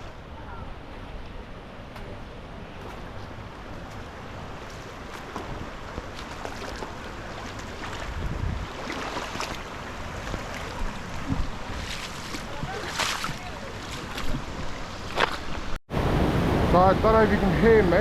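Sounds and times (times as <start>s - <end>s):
wind gusting on microphone: 8.0s - 18.0s.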